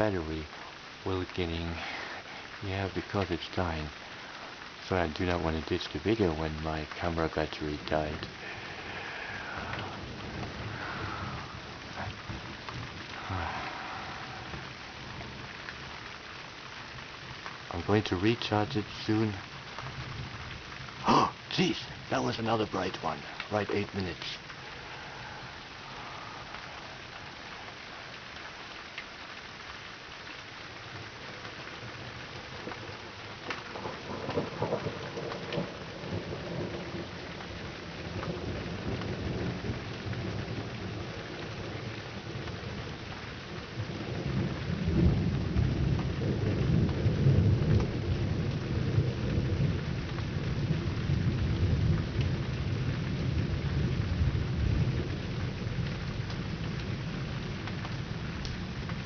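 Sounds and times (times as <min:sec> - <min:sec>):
steady rain: 0:00.0 - 0:59.0
thunder crackling and rumbling: 0:00.0 - 0:59.0.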